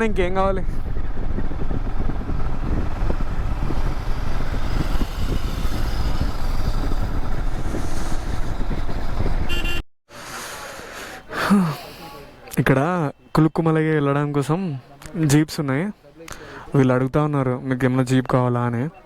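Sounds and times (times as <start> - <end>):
wind rush: 0.0 - 9.8
motorcycle engine: 0.8 - 9.8.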